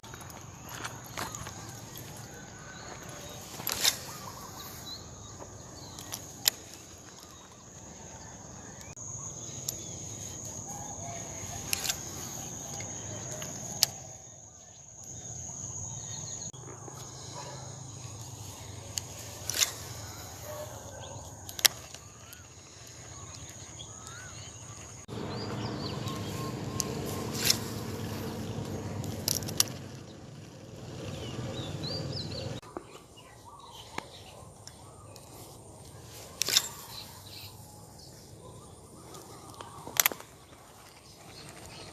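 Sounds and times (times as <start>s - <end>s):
bird chirps: 0.0s - 41.9s
loud low hum: 25.1s - 32.6s.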